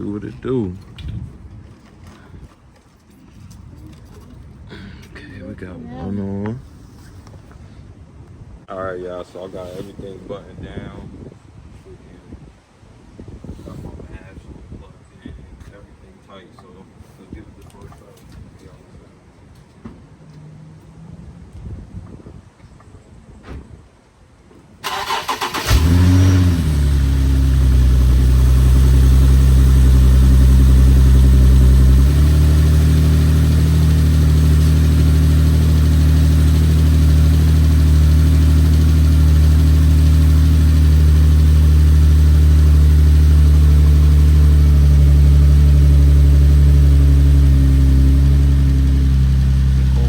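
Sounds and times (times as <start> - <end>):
car engine starting and idling: 24.8 - 50.0.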